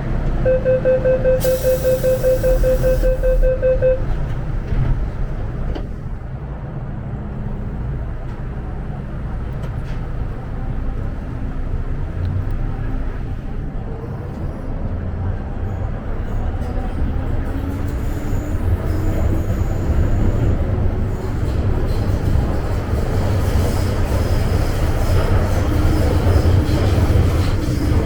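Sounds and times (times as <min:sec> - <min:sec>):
train running rumble: 0:00.0 - 0:28.0
rapid door warning beeps: 0:00.4 - 0:04.3.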